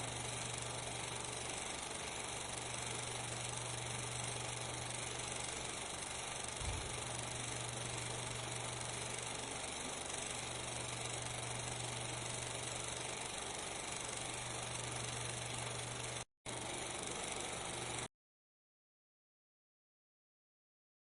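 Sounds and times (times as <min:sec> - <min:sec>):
constant low hum: 0:00.0 - 0:16.7.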